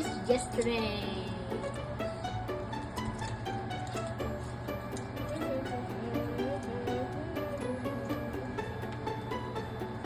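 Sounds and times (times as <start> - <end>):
plucked-string tune over a beat: 0.0 - 10.0.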